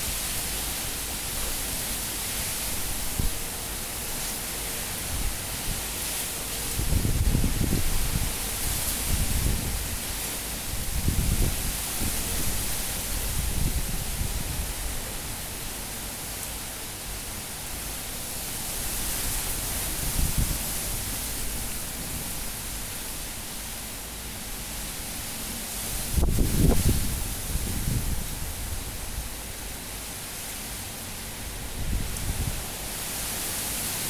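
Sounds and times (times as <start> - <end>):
strong wind rushing with gusts: 6.6 - 15.4, 18.6 - 23.7, 24.4 - 29.6, 31.3 - 34.0.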